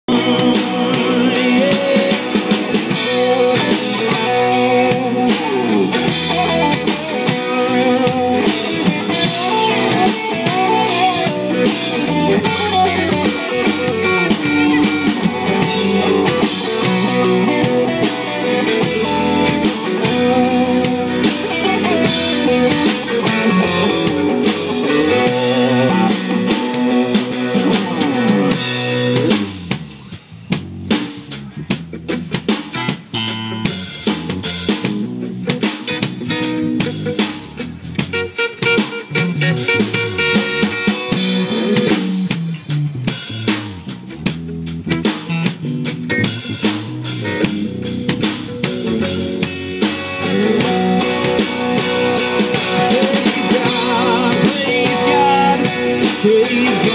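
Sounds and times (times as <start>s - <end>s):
rock band playing: 0.0s - 56.9s.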